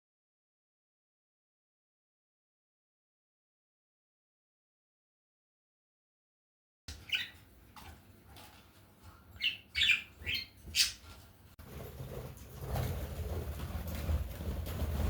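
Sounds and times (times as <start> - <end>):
budgerigar chirps: 7.0 - 7.4, 9.4 - 11.0.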